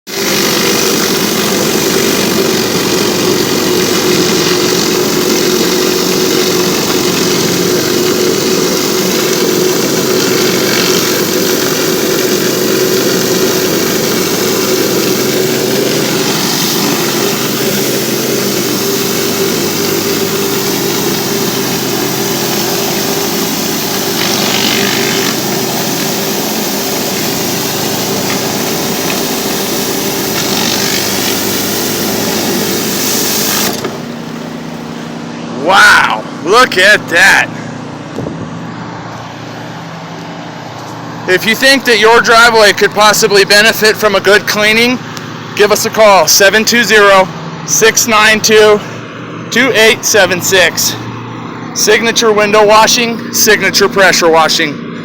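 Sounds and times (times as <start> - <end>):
high-pressure water spraying: 0.1 - 35.1
pressure washer machine hum: 0.1 - 55.0.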